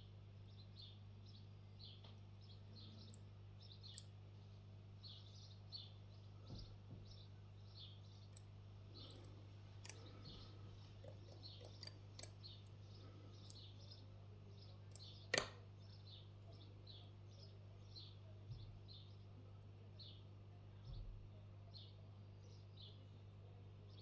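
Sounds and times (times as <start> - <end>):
low electrical hum: 0.0 - 24.0
lock picking tool clicks: 9.1 - 10.1, 11.0 - 12.8, 14.9 - 15.6.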